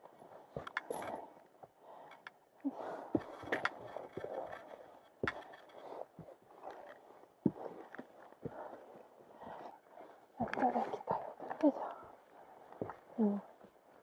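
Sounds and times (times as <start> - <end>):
footsteps on rocky trail: 3.1 - 9.7, 10.4 - 13.2.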